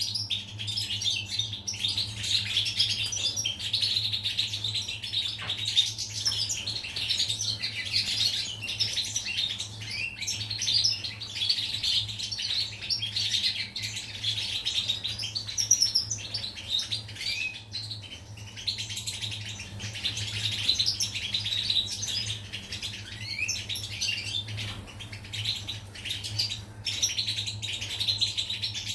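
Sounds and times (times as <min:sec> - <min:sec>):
bird twittering and trilling: 0:00.0 - 0:28.9.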